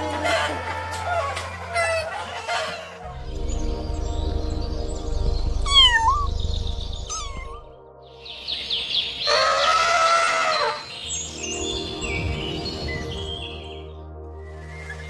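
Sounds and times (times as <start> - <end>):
background music: 0.0 - 15.0
cat chirping calls: 5.6 - 6.4, 7.1 - 7.6
cat meowing: 5.7 - 6.3, 7.1 - 7.6.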